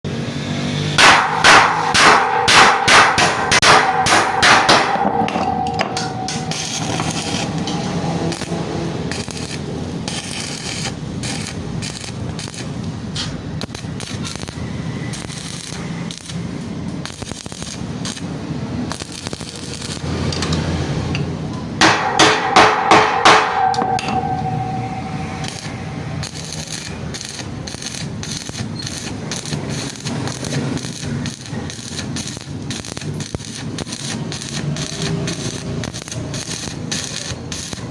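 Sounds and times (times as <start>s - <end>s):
metal ringing: 1.0s - 8.6s, 21.8s - 27.4s
hammer striking metal: 1.0s - 9.6s, 21.8s - 28.6s.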